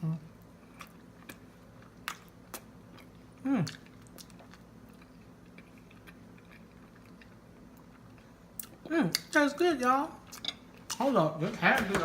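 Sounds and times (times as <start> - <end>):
person chewing food: 0.4 - 9.4.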